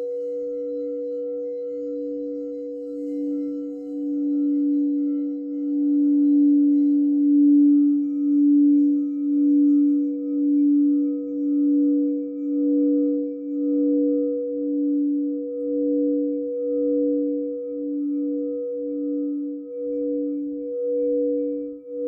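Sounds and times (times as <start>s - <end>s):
singing bowl ringing: 0.0s - 22.0s.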